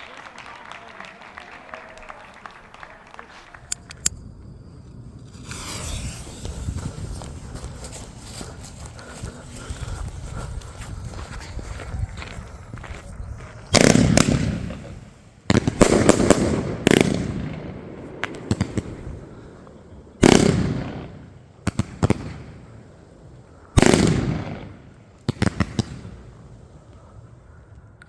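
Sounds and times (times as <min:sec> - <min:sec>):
sharp firework cracks: 0:03.4 - 0:09.2, 0:13.7 - 0:19.6, 0:20.2 - 0:22.8, 0:23.7 - 0:26.6
firework bangs echoing: 0:13.7 - 0:23.0, 0:23.7 - 0:26.7.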